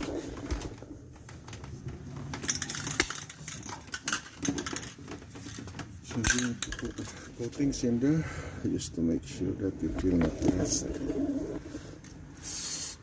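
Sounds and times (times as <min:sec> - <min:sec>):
brief hiss: 0:12.4 - 0:13.0.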